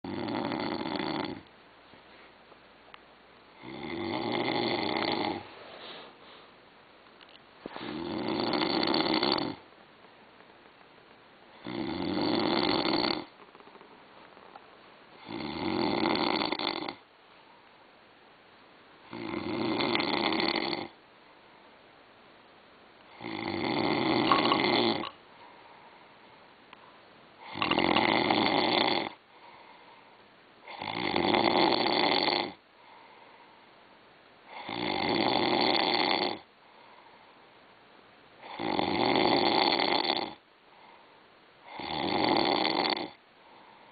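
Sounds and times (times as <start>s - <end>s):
person snoring: 0.0s - 1.5s, 3.6s - 5.5s, 7.7s - 9.6s, 11.6s - 13.4s, 15.2s - 17.0s, 19.1s - 21.0s, 23.1s - 25.2s, 27.4s - 29.8s, 30.7s - 32.6s, 34.5s - 36.5s, 38.4s - 40.4s, 41.6s - 43.2s.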